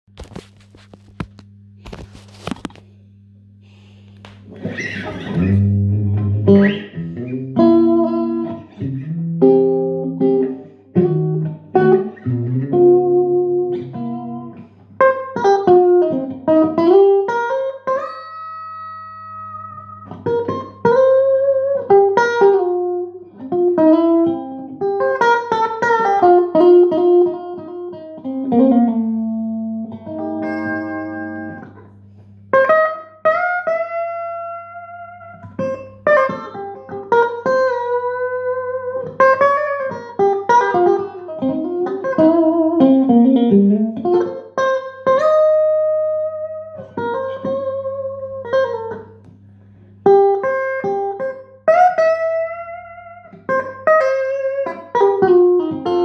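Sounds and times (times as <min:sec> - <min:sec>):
steady low hum: 0:00.2 - 0:08.0
electric guitar noodling: 0:03.6 - 0:56.0.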